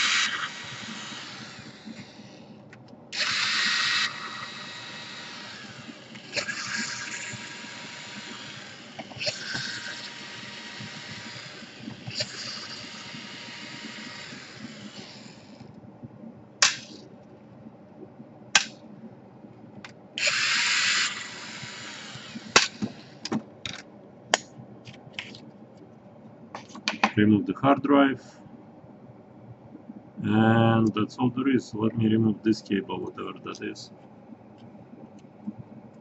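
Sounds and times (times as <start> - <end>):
electric screwdriver running: 0.0 - 2.4, 3.2 - 15.7, 20.2 - 23.3.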